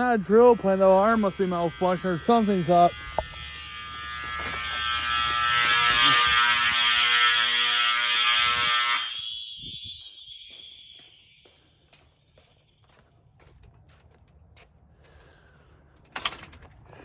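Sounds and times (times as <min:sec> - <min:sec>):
fire alarm buzzing: 0:00.0 - 0:13.0.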